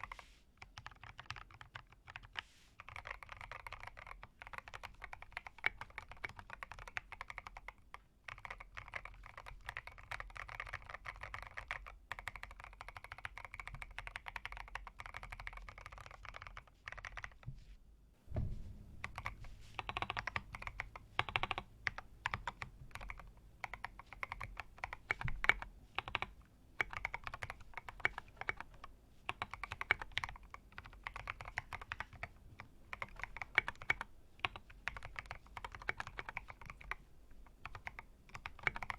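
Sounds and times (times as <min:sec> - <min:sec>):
mechanical keyboard typing: 0:00.0 - 0:17.4, 0:19.0 - 0:38.9.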